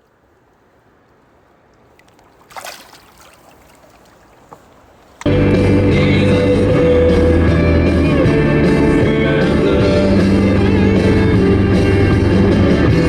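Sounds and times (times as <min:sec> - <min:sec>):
rock music with guitar: 0:05.3 - 0:13.0.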